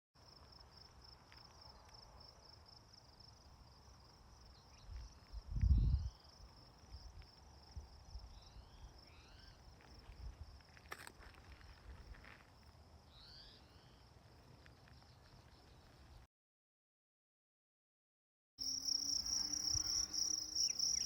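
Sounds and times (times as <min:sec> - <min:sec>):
bird chirps: 0:13.1 - 0:14.0, 0:19.3 - 0:21.0
insect trill: 0:18.6 - 0:21.0.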